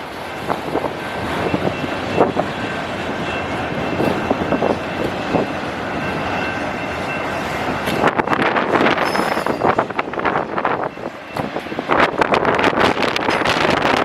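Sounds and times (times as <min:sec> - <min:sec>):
train wheels rumbling on rail: 0:00.0 - 0:14.0
faint high squeal: 0:09.0 - 0:09.9.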